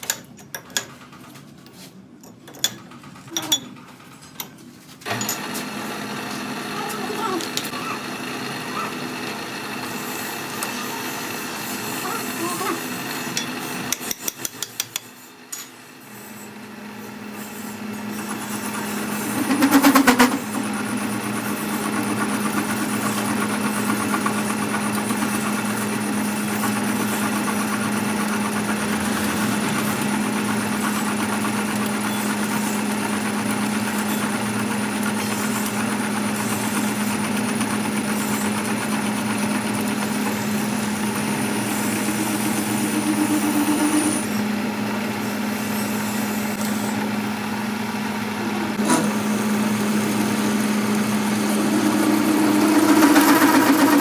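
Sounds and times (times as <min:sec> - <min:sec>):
workshop machine humming: 0:00.0 - 0:54.0
loud rattle: 0:51.4 - 0:54.0.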